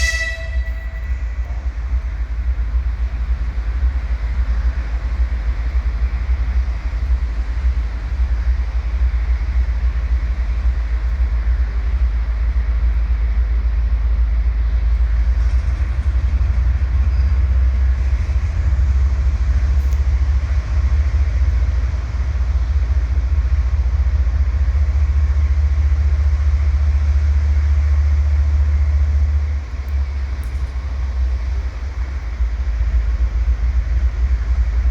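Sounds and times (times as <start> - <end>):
diesel train rumbling: 0.0 - 34.9.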